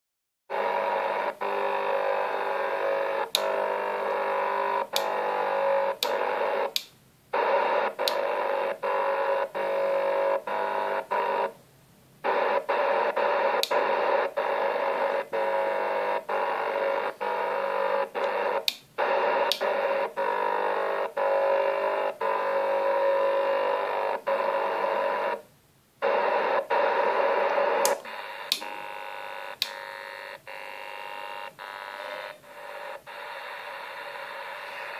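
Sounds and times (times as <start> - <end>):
radio buzzing with held tones: 0.5 - 11.6, 12.2 - 34.9
sharp clicks: 3.3 - 3.6, 6.0 - 7.0, 8.0 - 8.3, 18.2 - 19.8, 27.8 - 28.8, 29.6 - 29.8.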